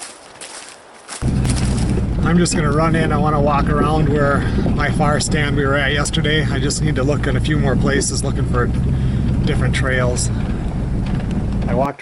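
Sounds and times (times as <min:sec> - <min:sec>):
footsteps on trail: 0:00.0 - 0:05.7
vehicle engine rumble: 0:01.2 - 0:12.0.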